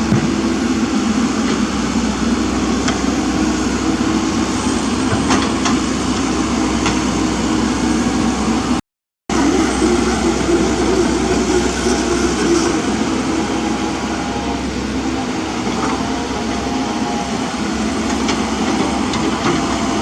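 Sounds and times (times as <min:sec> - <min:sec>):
excavator engine running: 0:00.0 - 0:00.6.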